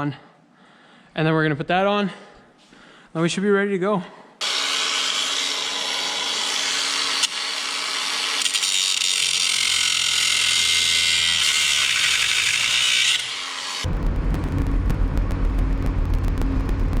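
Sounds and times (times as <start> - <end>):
angle grinder cutting steel: 4.4 - 13.9.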